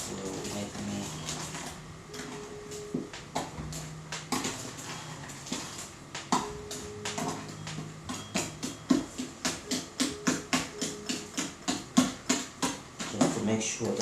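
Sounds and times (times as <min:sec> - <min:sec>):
utensil scraping mixing bowl: 0:04.3 - 0:06.4.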